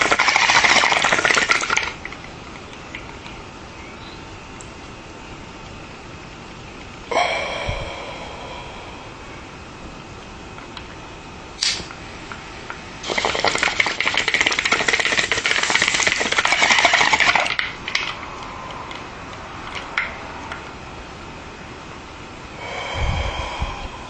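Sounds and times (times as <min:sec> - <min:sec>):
lighter click: 0:11.6 - 0:11.9.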